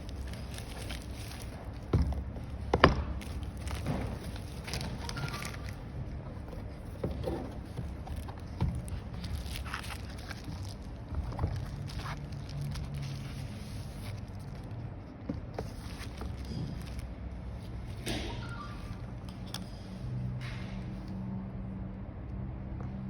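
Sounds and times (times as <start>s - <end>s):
packaging clicks and scrapes: 0.0s - 19.9s.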